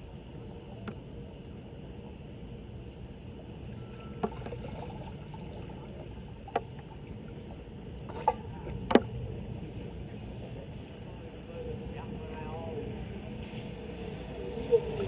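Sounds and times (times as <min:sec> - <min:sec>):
water running into drain: 0:03.8 - 0:07.4.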